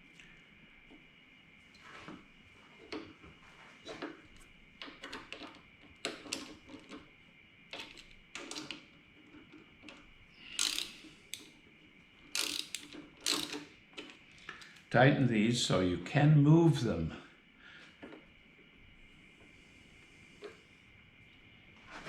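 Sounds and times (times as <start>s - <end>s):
ratchet wrench clicking: 10.6s - 11.5s, 12.3s - 13.6s.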